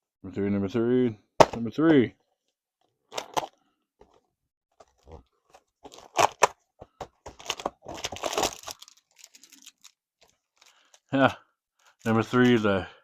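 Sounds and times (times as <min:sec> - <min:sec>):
packaging crinkling: 0:04.8 - 0:06.5, 0:07.2 - 0:11.1
cardboard tearing: 0:05.8 - 0:06.6, 0:07.3 - 0:09.9.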